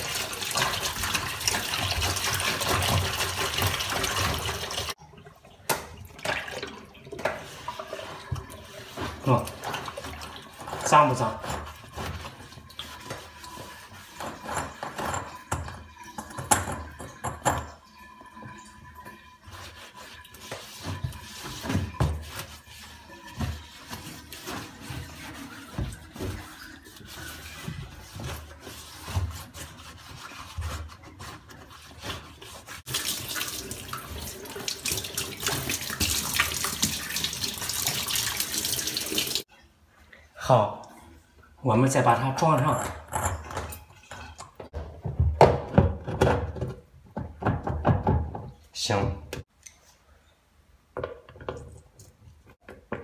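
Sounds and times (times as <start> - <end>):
running water stream: 32.8 - 39.5.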